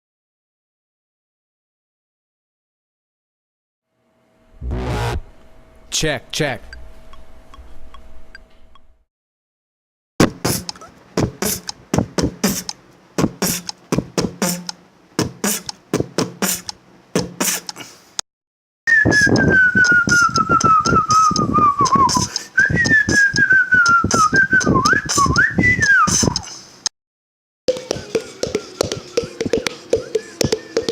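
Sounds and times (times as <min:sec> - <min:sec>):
mouth beatbox: 0:10.2 - 0:18.0, 0:19.0 - 0:26.9, 0:27.7 - 0:30.9
whistled melody: 0:18.9 - 0:26.4.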